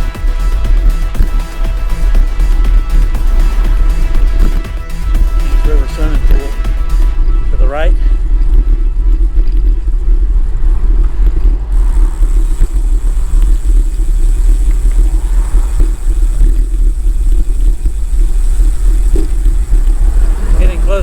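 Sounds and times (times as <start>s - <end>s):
low road rumble: 0.0s - 21.0s
wind buffeting microphone: 0.0s - 21.0s.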